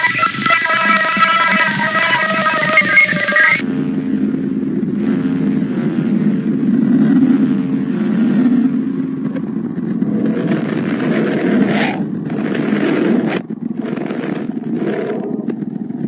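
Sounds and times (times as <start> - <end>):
hissing surges: 0.0 - 3.6
dense low rumble: 0.0 - 16.0.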